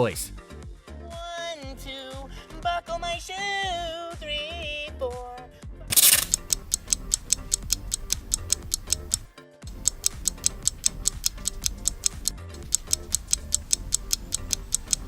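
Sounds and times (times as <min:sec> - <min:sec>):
background music: 0:00.0 - 0:15.0
fast timer ticking: 0:05.9 - 0:15.0.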